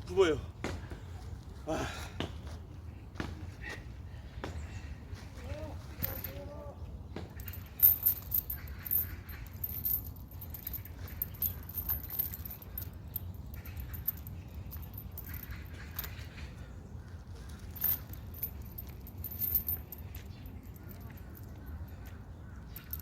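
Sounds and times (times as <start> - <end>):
metal weight clinking: 7.4 - 16.3, 17.6 - 22.1, 22.7 - 23.0.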